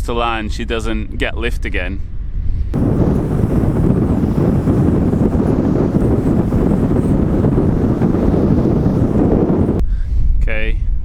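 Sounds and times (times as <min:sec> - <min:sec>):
wind buffeting microphone: 0:02.5 - 0:09.8.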